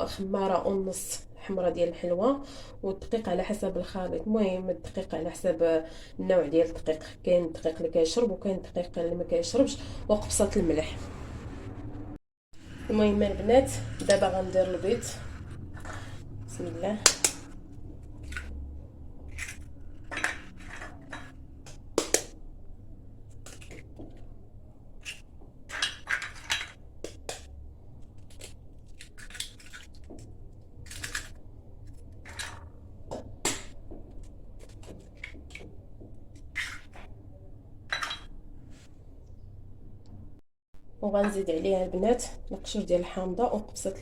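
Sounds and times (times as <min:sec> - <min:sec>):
eggs cracked against bowl: 0:17.0 - 0:17.6, 0:21.2 - 0:22.4.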